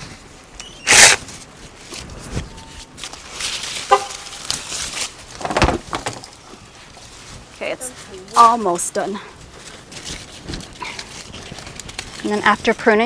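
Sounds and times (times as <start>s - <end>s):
mini chainsaw cutting branch: 0.8s - 1.2s.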